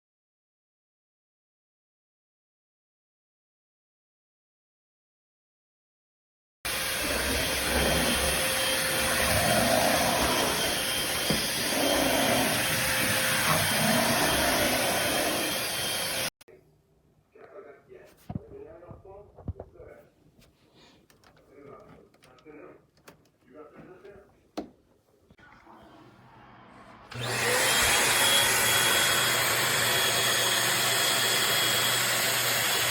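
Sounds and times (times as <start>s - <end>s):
stick vacuum running: 6.7s - 16.3s, 27.1s - 32.9s.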